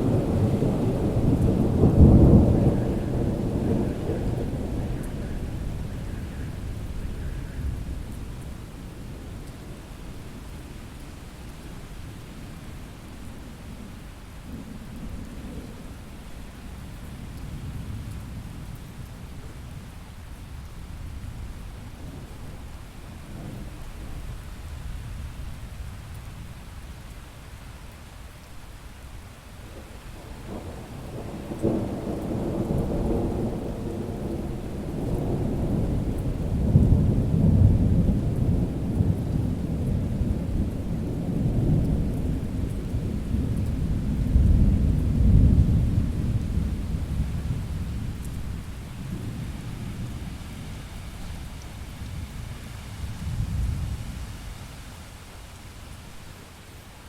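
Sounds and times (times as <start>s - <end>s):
thunder rumbling: 0.0s - 9.3s, 29.7s - 54.2s
steady rain: 0.0s - 57.0s.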